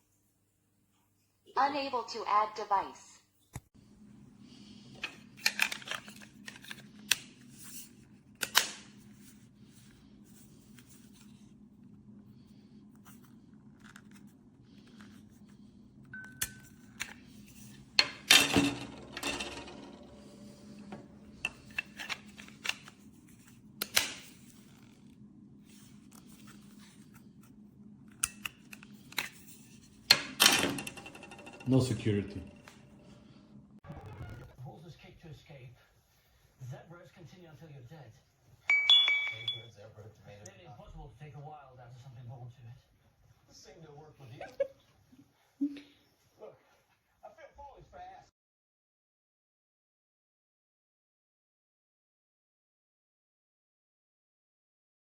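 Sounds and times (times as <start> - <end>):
short electronic beep: 38.7 - 39.7.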